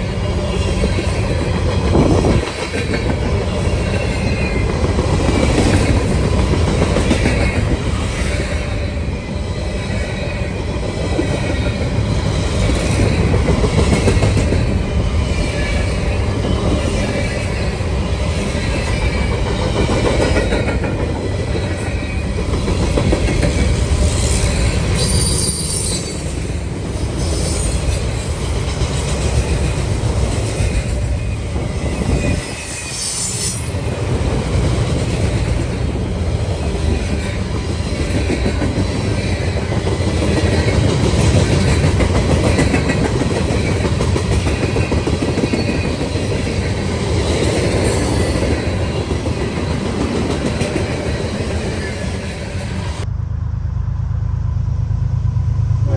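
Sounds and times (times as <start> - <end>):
train rolling by: 0.0 - 55.9
wheels clacking over rail joints: 9.9 - 25.0, 33.9 - 52.8
high-pitched wheel squeals: 23.6 - 29.7, 31.2 - 33.9.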